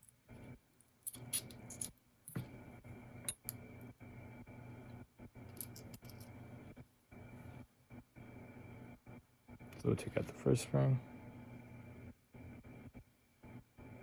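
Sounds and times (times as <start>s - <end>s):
screwdriver clicking and scraping metal: 5.5s - 6.3s.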